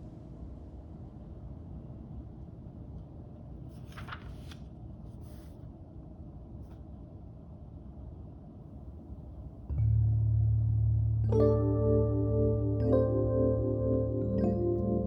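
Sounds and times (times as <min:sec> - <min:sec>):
low room rumble: 0:00.0 - 0:15.0
soft rustles: 0:03.6 - 0:05.7.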